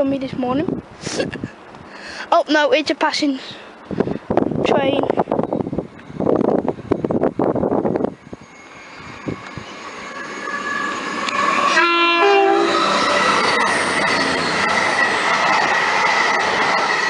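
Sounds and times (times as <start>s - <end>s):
train passing: 0.0s - 17.0s
wheels on rails whining: 5.4s - 17.0s
two-tone train horn: 10.6s - 13.0s.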